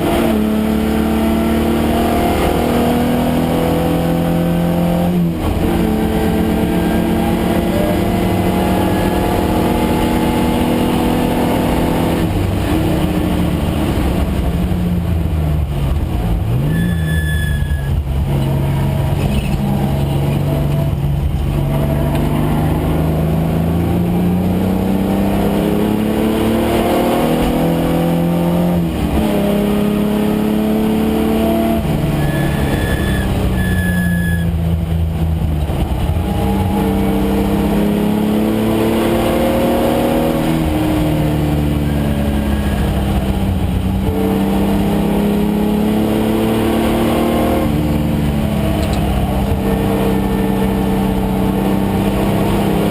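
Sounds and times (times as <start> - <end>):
race car engine revving: 0.0 - 52.9.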